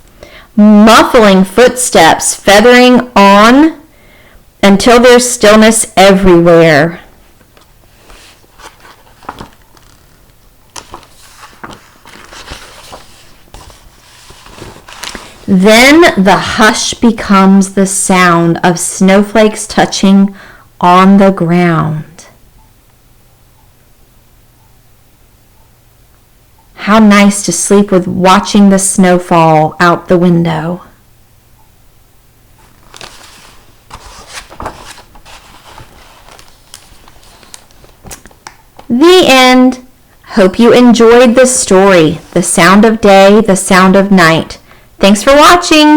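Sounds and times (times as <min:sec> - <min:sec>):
book pages turning: 0:07.4 - 0:15.5, 0:32.6 - 0:38.9
paper rustling: 0:07.4 - 0:15.5, 0:32.6 - 0:38.9.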